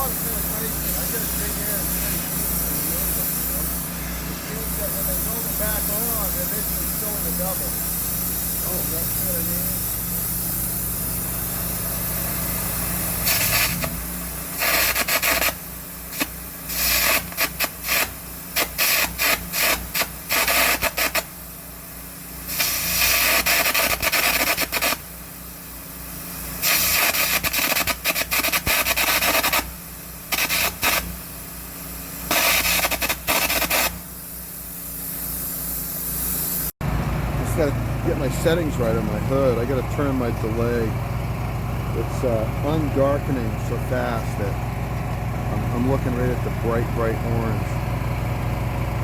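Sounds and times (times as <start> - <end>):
generator engine humming: 0.0 - 35.0, 36.8 - 49.0
arc gouging crackling hiss: 0.0 - 36.8.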